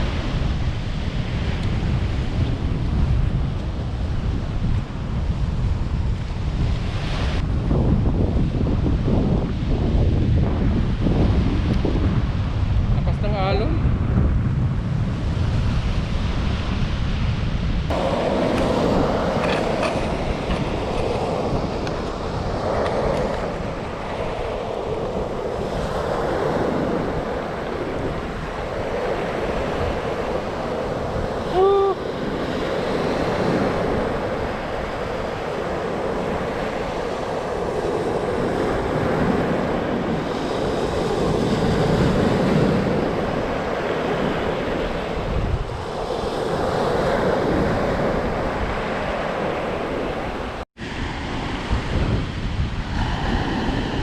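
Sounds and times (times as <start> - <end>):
ocean waves breaking on shore: 0.0 - 54.0
wind buffeting microphone: 0.0 - 54.0.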